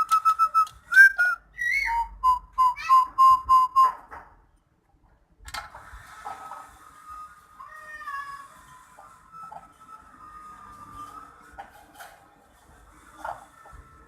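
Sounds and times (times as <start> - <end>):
parrot whistling: 0.0 - 4.0.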